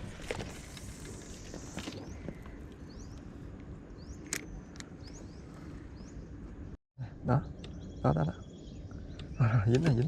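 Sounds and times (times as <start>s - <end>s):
small bird chirping: 7.2s - 10.0s.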